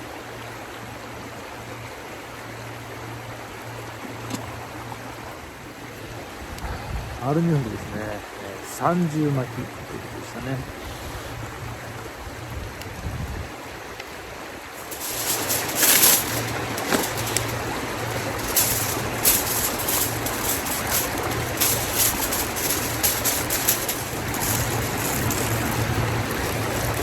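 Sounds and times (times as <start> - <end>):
aluminium foil crinkling: 14.8 - 27.0.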